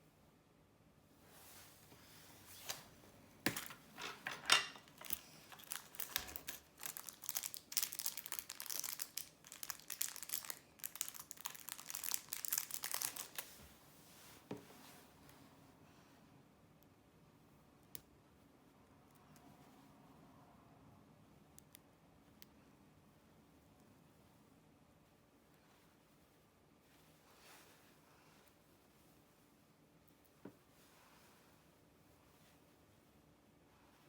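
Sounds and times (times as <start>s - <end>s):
packaging crinkling: 4.7s - 13.6s.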